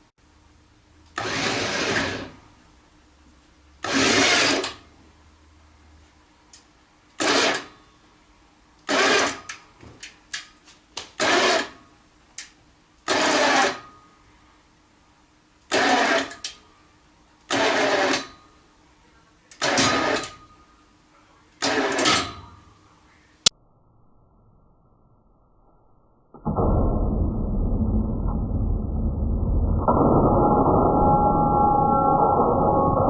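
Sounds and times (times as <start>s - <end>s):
hand winch strokes: 1.2s - 2.4s, 3.8s - 4.8s, 7.2s - 7.8s, 8.8s - 9.6s, 11.2s - 11.8s, 13.1s - 13.9s, 15.7s - 16.6s, 17.5s - 18.4s, 19.6s - 20.4s, 21.6s - 22.3s.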